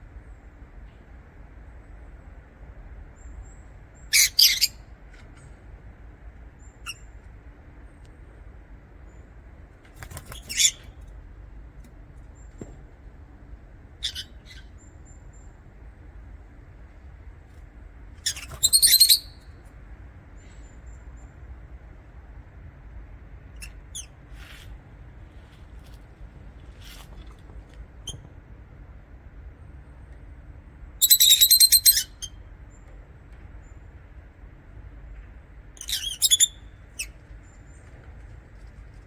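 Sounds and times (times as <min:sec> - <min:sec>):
lovebirds shrill chirps: 0:04.1 - 0:04.7, 0:10.3 - 0:10.9, 0:14.0 - 0:14.7, 0:18.2 - 0:19.4, 0:31.0 - 0:32.4, 0:35.8 - 0:37.2.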